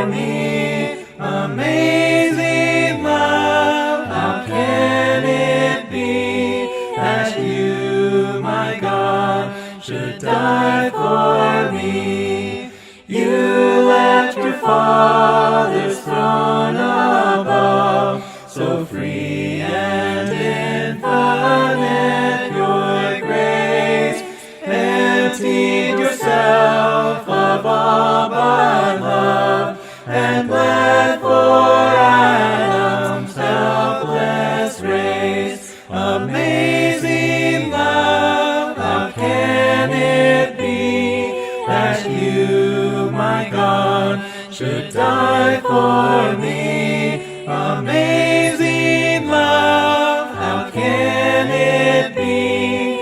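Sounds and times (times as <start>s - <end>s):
group singing a hymn: 0.0s - 53.0s
singers breathing: 9.5s - 9.8s, 12.7s - 13.1s, 18.2s - 18.6s, 24.2s - 24.7s, 29.7s - 30.2s, 35.6s - 36.0s, 41.3s - 41.6s, 44.2s - 44.5s.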